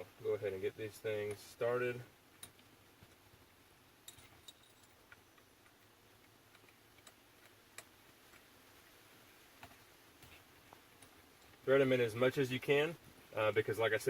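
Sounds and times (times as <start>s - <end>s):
small metal clicks: 4.0s - 8.5s.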